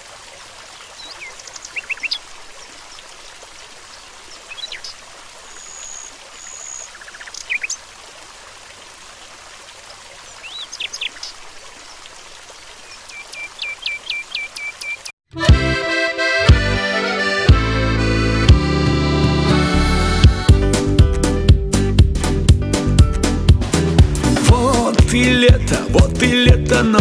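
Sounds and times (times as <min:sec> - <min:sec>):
stream running: 0:00.0 - 0:15.2, 0:23.8 - 0:27.0
birds chirping: 0:00.7 - 0:03.1, 0:03.9 - 0:08.0, 0:10.2 - 0:12.0, 0:12.8 - 0:15.2.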